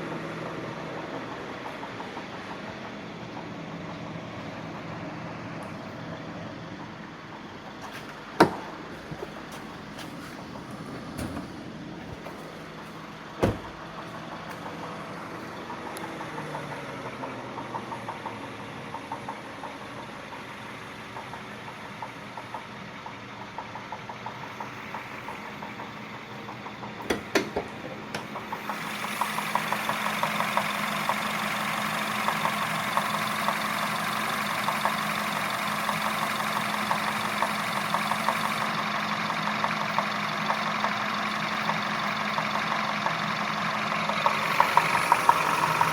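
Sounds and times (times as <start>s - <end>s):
car engine idling with ticking: 0.0s - 45.9s
thump: 13.4s - 13.8s.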